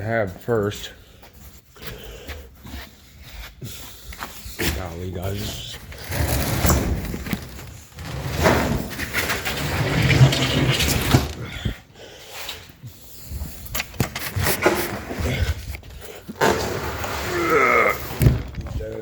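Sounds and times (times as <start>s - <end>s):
objects knocking and scraping: 4.6s - 11.8s, 13.7s - 19.0s.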